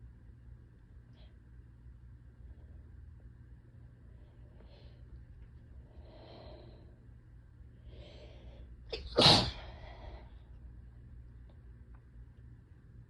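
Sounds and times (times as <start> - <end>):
person sneezing: 8.9 - 9.8.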